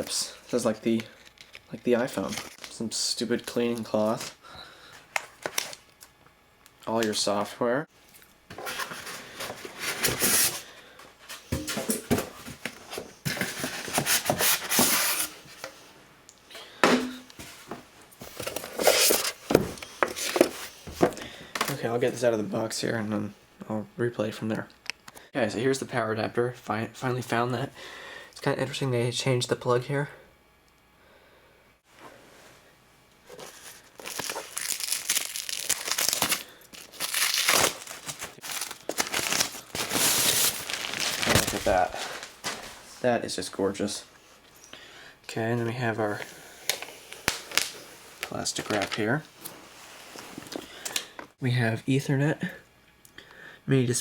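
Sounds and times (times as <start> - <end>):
packaging rustling: 33.3 - 42.9, 46.7 - 49.2.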